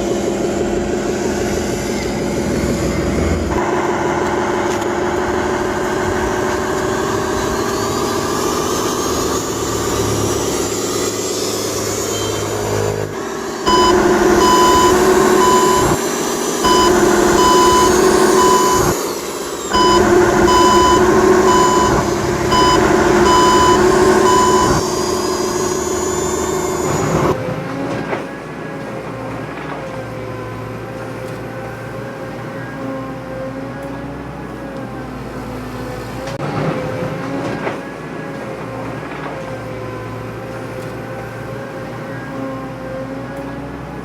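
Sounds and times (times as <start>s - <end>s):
electronic reversing beeper: 13.7s - 16.0s, 16.6s - 19.0s, 19.7s - 26.5s.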